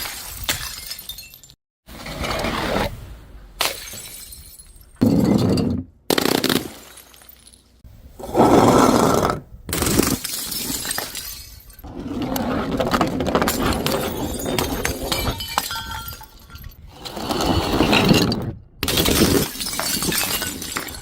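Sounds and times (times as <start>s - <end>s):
glass bottles shattering: 0.0s - 1.6s, 3.6s - 5.9s, 6.6s - 7.8s, 10.0s - 11.9s, 13.4s - 16.9s, 17.8s - 21.0s
glass shards tinkling: 0.3s - 1.6s, 10.2s - 11.8s, 14.0s - 16.9s, 19.0s - 21.0s.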